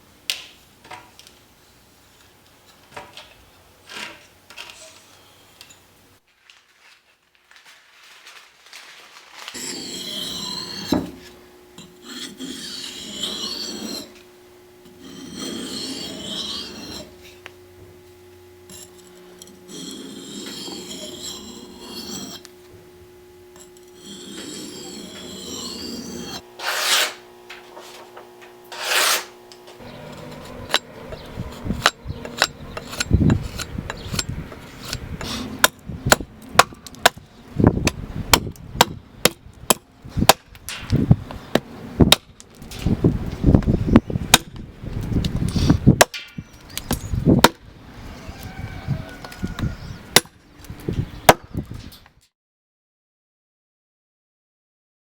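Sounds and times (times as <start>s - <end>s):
file rasping strokes: 9.6s - 14.2s, 14.9s - 17.3s, 18.7s - 22.5s, 23.6s - 27.3s, 28.7s - 37.2s.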